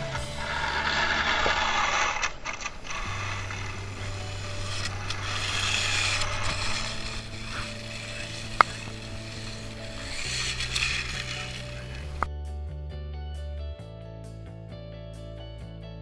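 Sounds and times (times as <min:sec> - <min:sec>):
background music with bass notes: 0:00.0 - 0:01.5, 0:02.9 - 0:16.0
toy snowmobile motor and track: 0:00.0 - 0:12.3.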